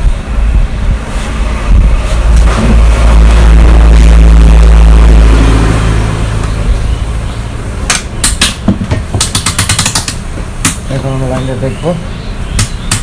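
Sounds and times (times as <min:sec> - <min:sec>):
loud low electrical hum: 0:00.0 - 0:13.0
sharp clicks and taps: 0:07.9 - 0:10.8.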